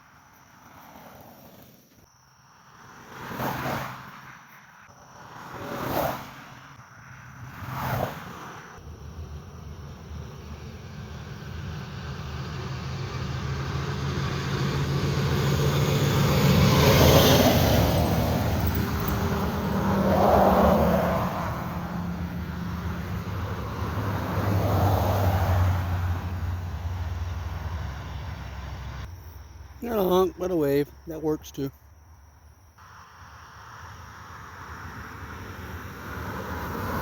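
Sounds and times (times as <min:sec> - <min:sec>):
vehicles driving past: 0:02.6 - 0:37.0.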